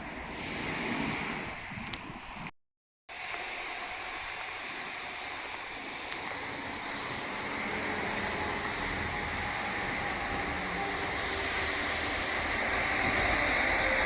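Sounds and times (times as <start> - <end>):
steady outdoor rushing noise: 3.1 - 14.0.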